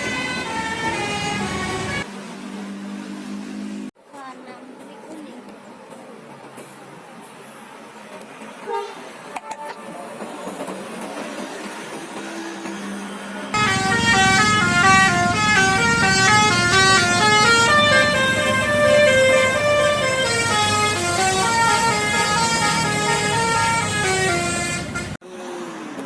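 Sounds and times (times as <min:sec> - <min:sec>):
bus horn playing a melody: 0:00.0 - 0:02.1, 0:13.6 - 0:25.2.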